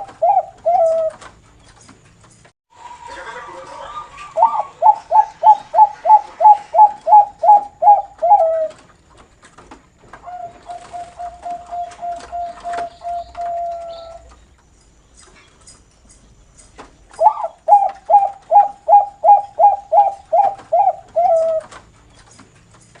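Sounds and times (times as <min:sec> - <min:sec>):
dove cooing: 0:00.0 - 0:01.3, 0:02.9 - 0:08.9, 0:10.2 - 0:14.4, 0:17.2 - 0:21.8.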